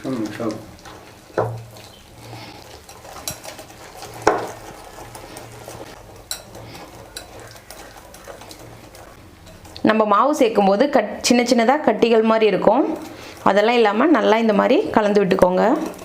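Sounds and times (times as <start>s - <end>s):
batter stirred in a bowl: 0.0s - 16.0s.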